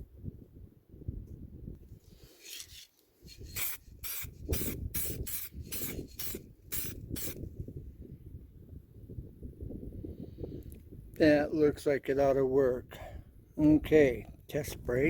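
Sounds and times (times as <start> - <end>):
aerosol spray can spurts: 2.2 - 7.4.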